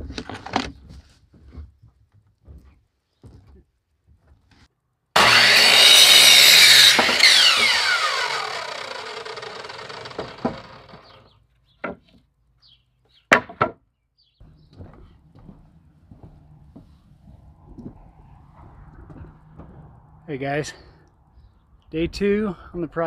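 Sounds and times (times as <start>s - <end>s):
saw blade winding down: 5.2s - 11.2s
power saw cutting wood: 5.2s - 11.3s
lumber knocking: 10.1s - 11.1s, 13.3s - 13.8s.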